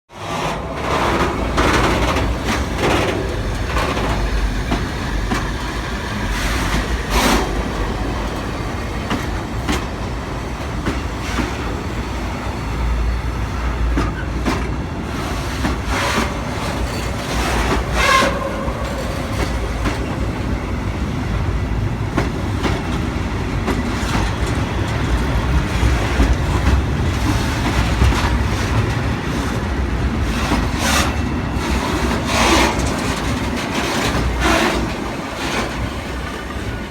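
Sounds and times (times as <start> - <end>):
train rolling low rumble: 0.1 - 36.9
wheels clanking over rail joints: 0.2 - 36.9
metallic squeal: 16.8 - 20.2.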